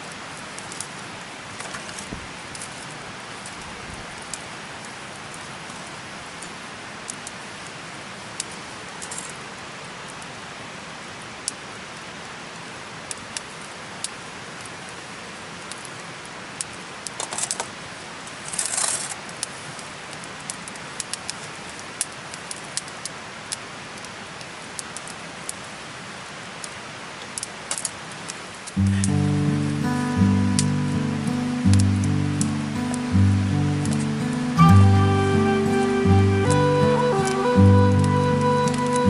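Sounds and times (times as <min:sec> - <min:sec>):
steady fire hiss: 0:28.7 - 0:38.9.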